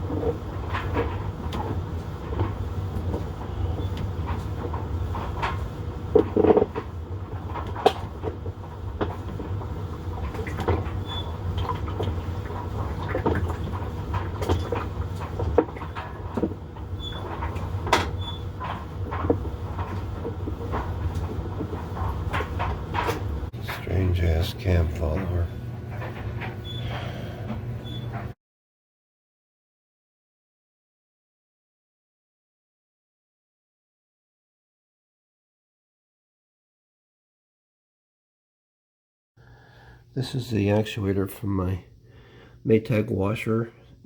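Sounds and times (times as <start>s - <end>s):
washing machine clunks and clicks: 0.0s - 28.3s
washing machine motor hum: 0.0s - 28.4s, 39.4s - 44.0s.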